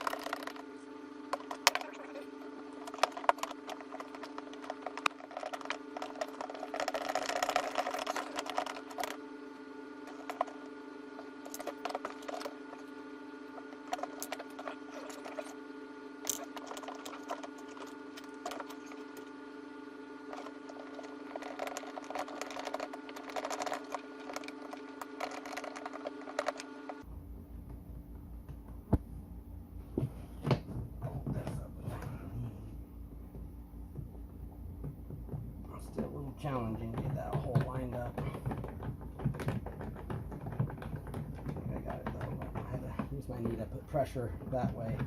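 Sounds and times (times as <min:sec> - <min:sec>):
plastic parts clicking and rattling: 0:00.0 - 0:00.6, 0:02.8 - 0:09.2, 0:20.3 - 0:27.0
steady low hum: 0:00.0 - 0:45.0.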